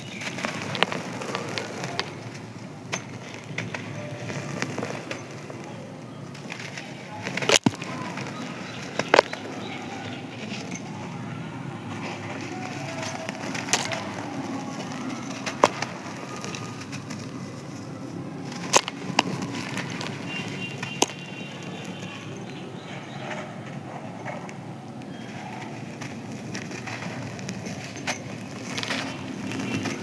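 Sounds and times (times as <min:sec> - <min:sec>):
pieces snapping: 0:00.1 - 0:05.6, 0:06.3 - 0:10.9, 0:12.4 - 0:22.6
sand-cement crumbling: 0:06.3 - 0:10.6.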